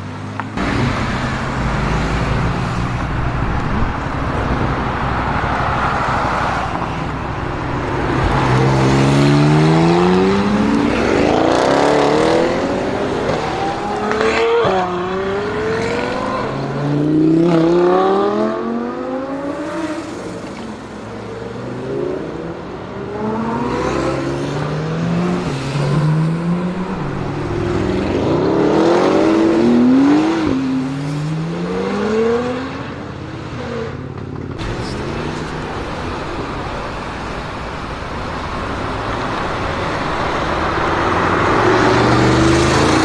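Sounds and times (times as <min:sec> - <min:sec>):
car engine accelerating hard: 0:00.6 - 0:20.2, 0:34.6 - 0:43.0.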